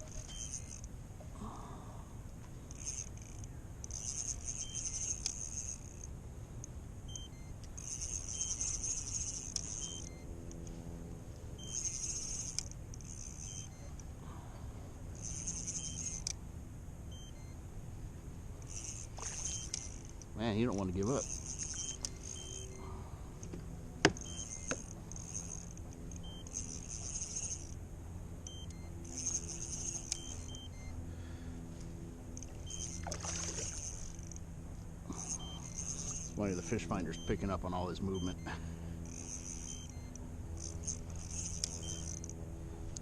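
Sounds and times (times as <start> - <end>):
fishing reel whirring: 0.0 - 0.9, 2.5 - 14.2, 14.9 - 16.4, 18.5 - 27.8, 28.4 - 31.4, 32.2 - 43.0.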